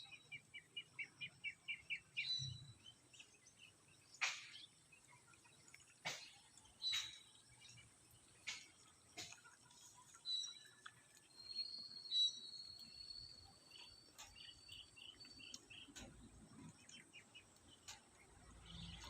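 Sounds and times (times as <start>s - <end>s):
birdsong: 0.0s - 19.0s
insect sounds: 0.0s - 19.0s.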